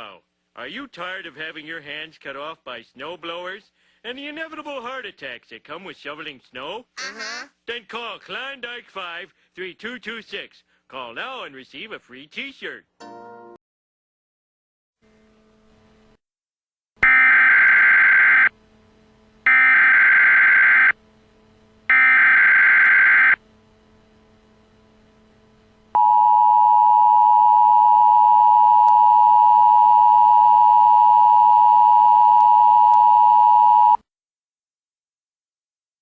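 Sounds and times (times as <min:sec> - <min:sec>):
steady two-tone attention signal: 0:26.0 - 0:34.0.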